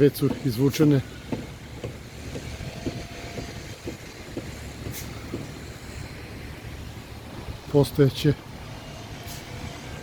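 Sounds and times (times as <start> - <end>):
road traffic rumble: 0.0 - 10.0.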